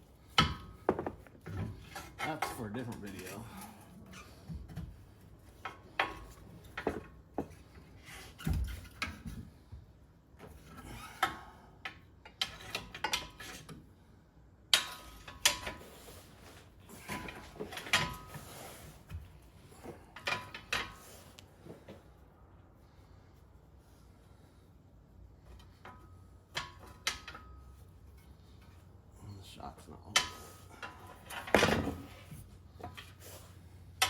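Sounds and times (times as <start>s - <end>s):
hand tools clanking on steel: 0.3s - 4.8s, 14.7s - 15.9s, 16.8s - 18.6s, 19.8s - 21.1s, 25.6s - 28.8s, 29.9s - 33.2s.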